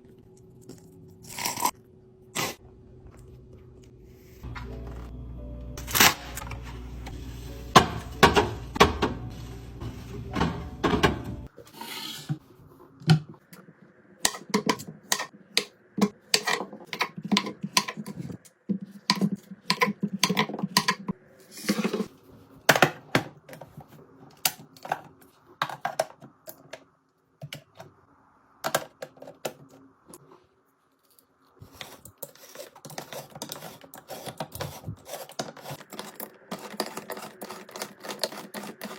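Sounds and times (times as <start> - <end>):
containers clicking and clunking: 14.2 - 21.1, 22.7 - 27.9, 31.8 - 38.9.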